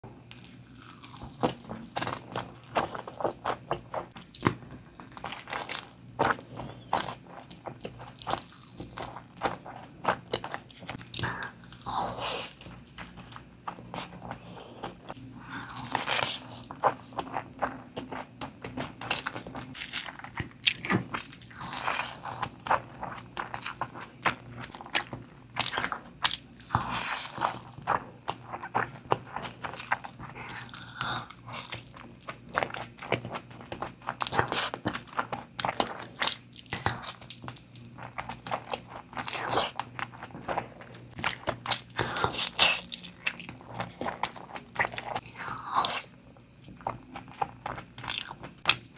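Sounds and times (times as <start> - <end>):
person chewing and slurping: 0.8 - 46.1, 46.7 - 48.9.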